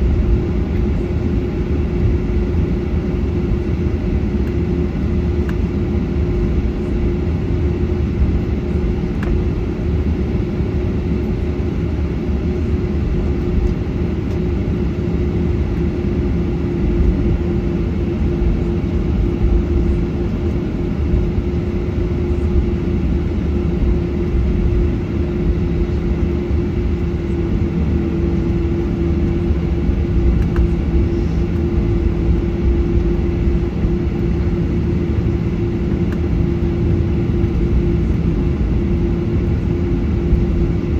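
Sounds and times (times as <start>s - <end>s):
airplane cabin engine rumble: 0.0s - 40.9s
constant hum: 0.0s - 40.9s.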